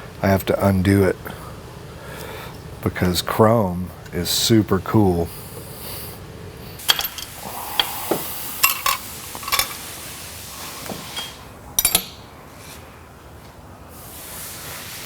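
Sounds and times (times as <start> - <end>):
metal tools clinking: 6.8 - 7.4, 8.6 - 9.8, 11.1 - 12.3.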